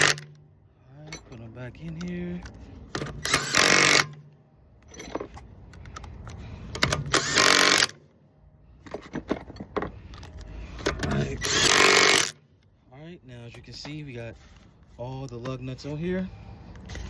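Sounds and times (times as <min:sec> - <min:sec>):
impact wrench running: 0:00.0 - 0:00.4, 0:03.1 - 0:04.2, 0:06.8 - 0:08.0, 0:11.2 - 0:12.4
metallic clicks of lug nuts: 0:01.1 - 0:08.0.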